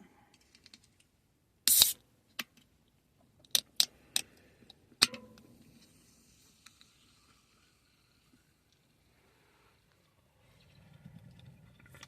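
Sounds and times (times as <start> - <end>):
faint fizz: 5.6 - 12.0.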